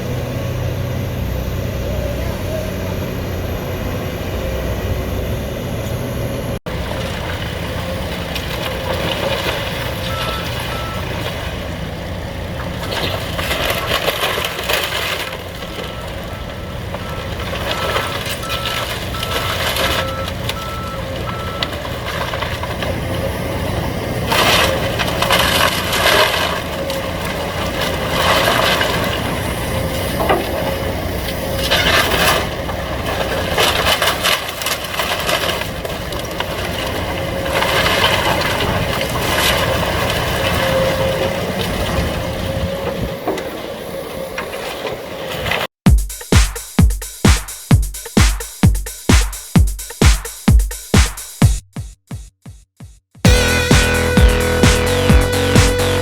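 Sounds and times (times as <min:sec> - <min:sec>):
excavators running under load: 0:00.0 - 0:45.7, 0:53.2 - 0:56.0
wooden structure crunching and crashing: 0:06.7 - 0:42.6
backup alarm beeping: 0:10.1 - 0:11.1, 0:15.9 - 0:21.8, 0:53.2 - 0:56.0.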